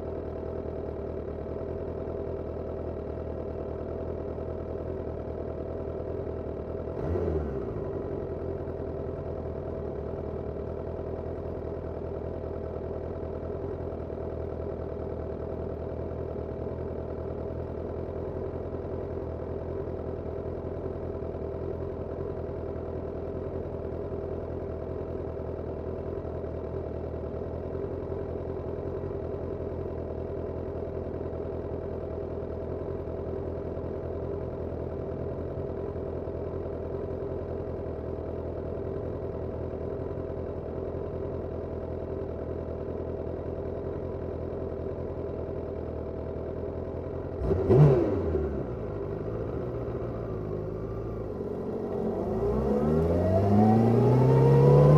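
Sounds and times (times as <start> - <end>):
motorcycle engine idling: 0.0 - 47.4, 48.0 - 54.9.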